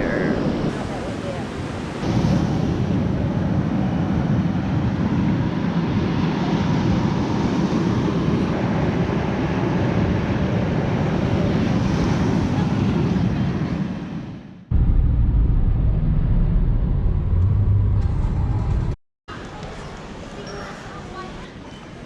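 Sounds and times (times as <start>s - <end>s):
ocean surf washing ashore: 0.0s - 14.5s.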